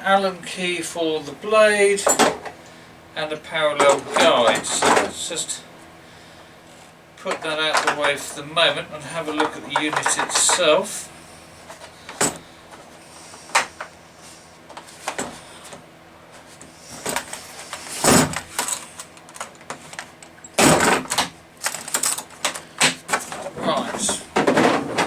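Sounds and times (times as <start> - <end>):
plastic clatter and rustling: 7.2 - 8.4, 9.3 - 10.8, 16.9 - 25.0
sharp clicks and knocks: 9.3 - 10.8.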